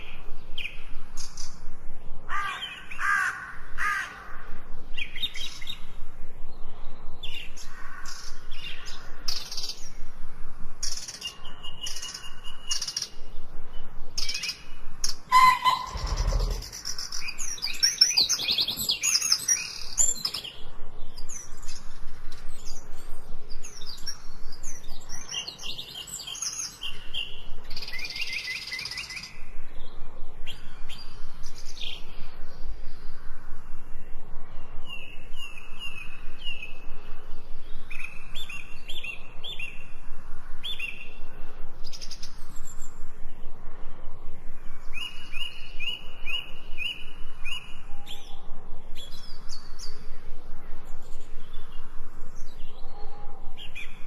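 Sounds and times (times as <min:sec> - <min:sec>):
birds chirping and singing: 0:00.0 - 0:43.6, 0:44.5 - 0:54.0
harsh caw-like bird call: 0:02.3 - 0:04.6, 0:15.3 - 0:16.8.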